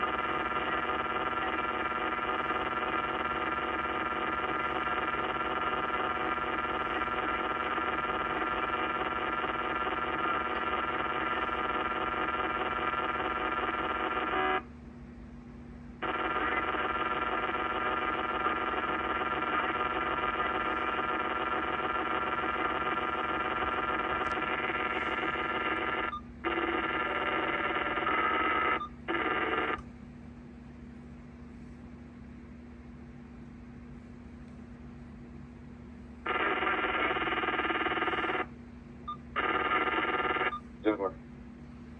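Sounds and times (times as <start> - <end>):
radio scanner static sizzle: 0.0 - 14.6, 16.0 - 29.8, 36.3 - 38.5, 39.4 - 41.1.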